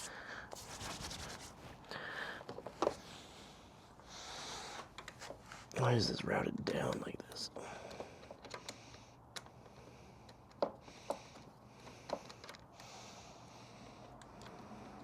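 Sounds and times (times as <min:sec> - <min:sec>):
person breathing: 0:00.0 - 0:04.9, 0:07.5 - 0:15.0
hand tools clicking and tapping: 0:07.9 - 0:12.9.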